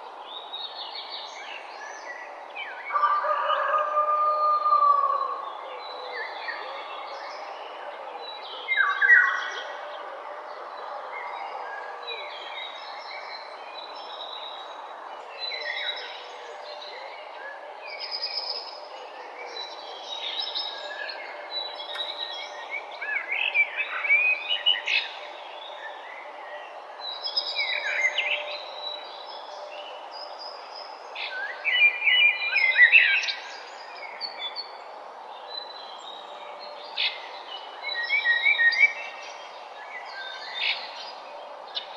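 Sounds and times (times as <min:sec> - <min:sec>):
birds chirping and warbling: 0:00.0 - 0:41.9
steady background hiss: 0:03.9 - 0:41.9.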